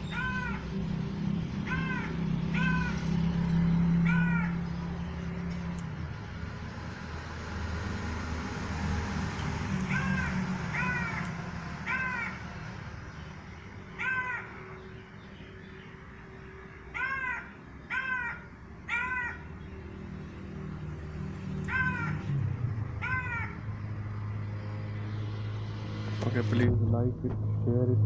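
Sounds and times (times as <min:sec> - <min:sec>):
crow cawing: 0:00.0 - 0:00.8, 0:01.6 - 0:03.1, 0:04.0 - 0:04.7, 0:09.8 - 0:12.5, 0:13.9 - 0:14.8, 0:16.9 - 0:19.6, 0:21.6 - 0:22.3, 0:23.0 - 0:23.7.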